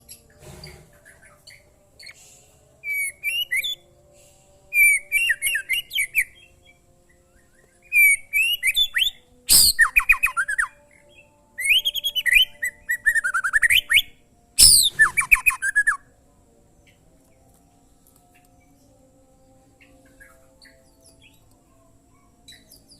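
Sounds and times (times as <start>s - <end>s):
bird singing whistled phrases: 2.8s - 3.8s, 4.8s - 6.4s, 7.4s - 16.0s.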